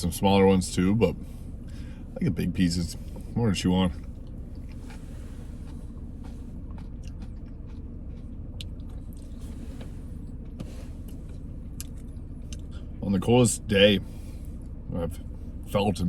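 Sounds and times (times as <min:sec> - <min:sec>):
car engine running: 0:00.0 - 0:16.0
faint steady hum: 0:00.0 - 0:16.0
person chewing crunchy food: 0:04.0 - 0:12.7.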